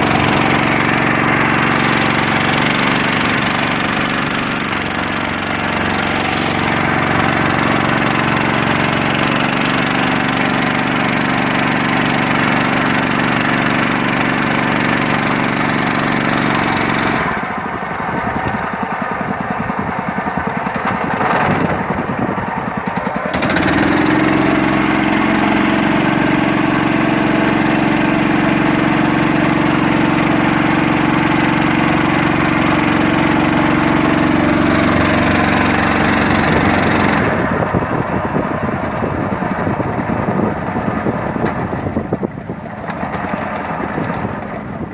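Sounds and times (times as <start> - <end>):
boat engine running: 0.0 - 44.9.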